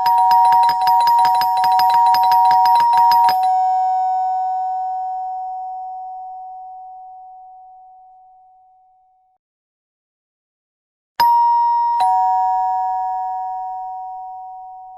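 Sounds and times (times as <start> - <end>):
two-note doorbell chime: 0.0 - 7.3, 11.2 - 14.9.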